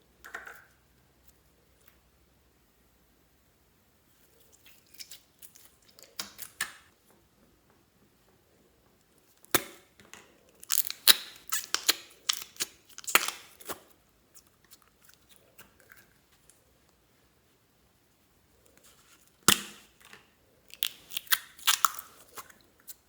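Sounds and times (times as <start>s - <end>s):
slime squelching and popping: 10.6s - 13.7s.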